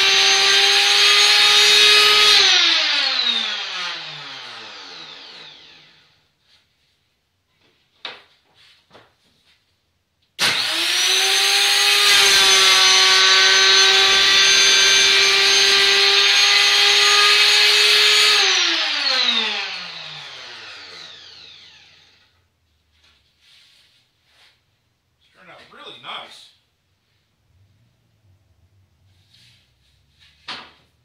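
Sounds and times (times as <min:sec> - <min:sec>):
router whining: 0:00.0 - 0:06.2, 0:10.4 - 0:22.4.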